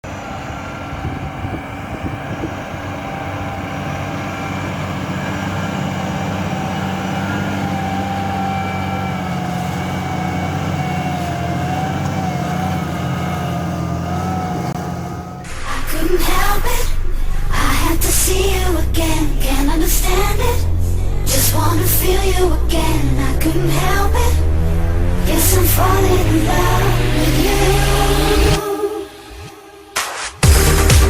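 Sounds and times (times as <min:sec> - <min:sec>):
tractor diesel engine running: 0:00.0 - 0:28.6
wavering whine: 0:00.0 - 0:29.9.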